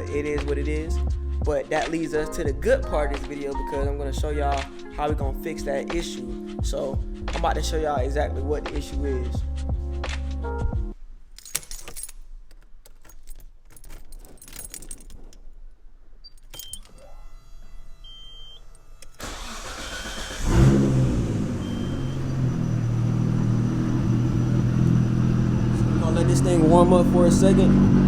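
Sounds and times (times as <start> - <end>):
keys jangling: 11.3 - 15.7, 16.3 - 17.0
car engine cranking and idling: 12.5 - 28.0.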